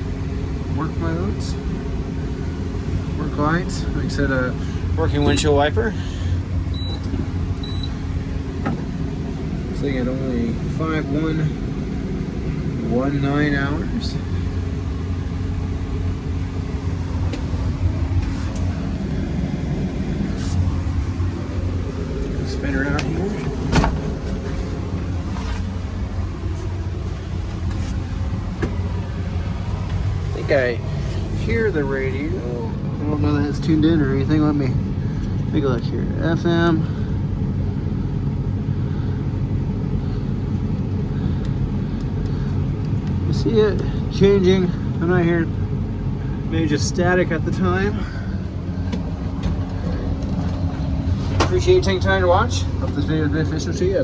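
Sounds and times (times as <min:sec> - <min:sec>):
excavator diesel engine idling: 0:00.0 - 0:54.0.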